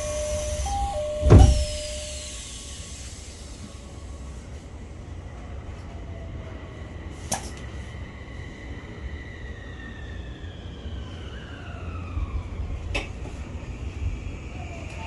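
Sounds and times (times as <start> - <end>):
door chime: 0.0 - 2.4
steady high tone: 0.0 - 3.6
train doors shutting with a thud: 0.0 - 4.3, 12.7 - 13.8
low steady train hum: 0.0 - 15.0.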